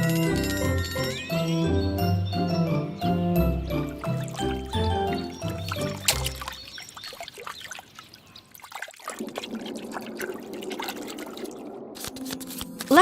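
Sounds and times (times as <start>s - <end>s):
children's music: 0.0s - 6.4s
water trickling and bubbling: 3.6s - 13.0s.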